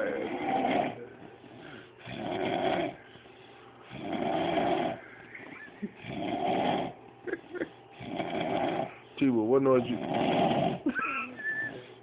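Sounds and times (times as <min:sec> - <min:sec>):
person snoring: 0:00.0 - 0:03.0, 0:03.9 - 0:07.0, 0:07.6 - 0:08.9, 0:09.8 - 0:10.8.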